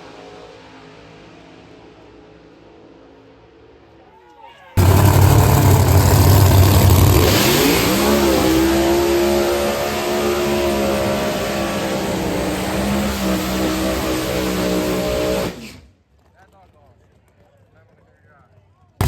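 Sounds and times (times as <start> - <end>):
drag racing car engine revving: 4.8 - 15.8.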